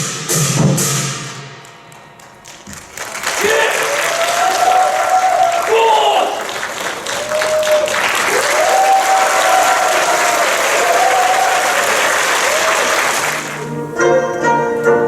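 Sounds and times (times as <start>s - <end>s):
audience applauding: 2.2s - 13.8s.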